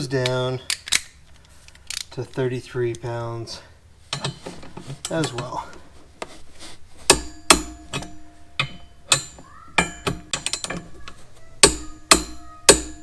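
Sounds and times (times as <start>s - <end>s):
hand tools clanking on metal: 4.0s - 13.0s.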